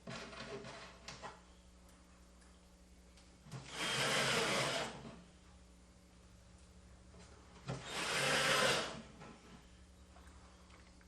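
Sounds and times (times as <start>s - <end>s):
cordless drill whirring: 3.7s - 5.0s, 7.8s - 9.1s.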